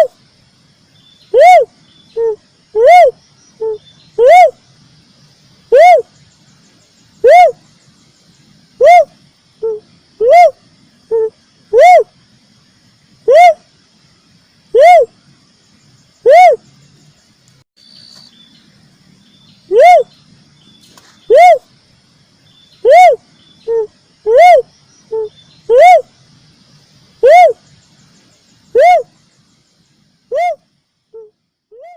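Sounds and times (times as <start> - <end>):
dove hooting call: 1.3 - 4.6, 5.7 - 6.1, 7.2 - 7.6, 8.8 - 12.1, 13.2 - 13.7, 14.7 - 15.2, 16.2 - 16.6, 19.7 - 20.1, 21.3 - 21.7, 22.8 - 26.1, 27.2 - 27.6, 28.7 - 29.1, 30.3 - 30.6, 31.2 - 31.9.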